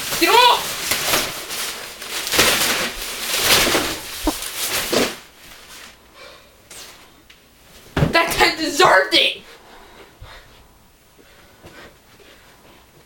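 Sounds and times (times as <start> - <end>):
tent fabric rustling: 0.0 - 6.0.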